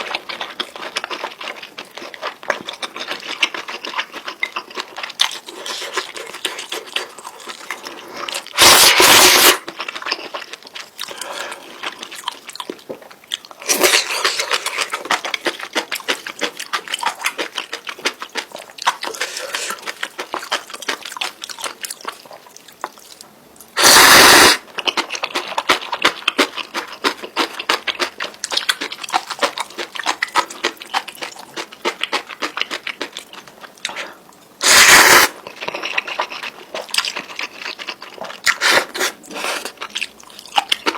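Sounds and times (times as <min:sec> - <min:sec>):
wet chewing and mouth clicks: 0:00.0 - 0:40.9
loud noodle slurp: 0:08.5 - 0:09.6, 0:23.8 - 0:24.7, 0:34.6 - 0:35.4, 0:38.5 - 0:39.8.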